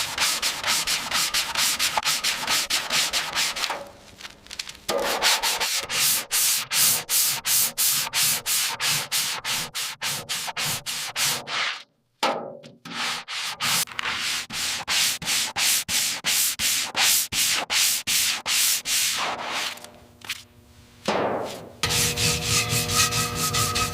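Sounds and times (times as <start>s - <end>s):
hand sanding strokes: 0.0s - 3.7s, 5.0s - 11.8s, 12.9s - 19.8s, 21.8s - 23.9s.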